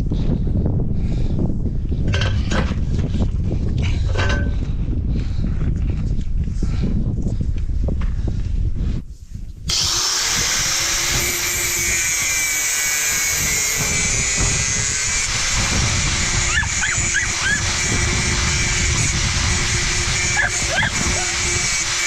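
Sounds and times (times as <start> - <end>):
power tool running: 9.7 - 22.0.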